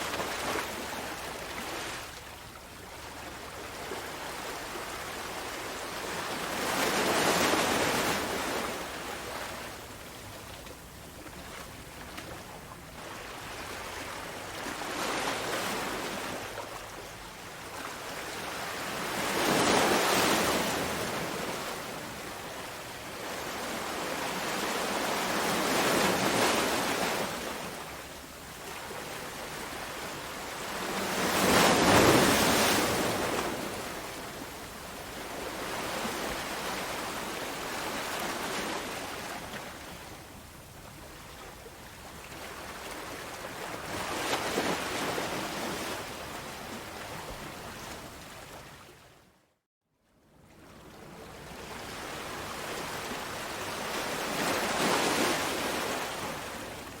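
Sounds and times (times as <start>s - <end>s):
ocean waves breaking: 28.6s - 39.9s.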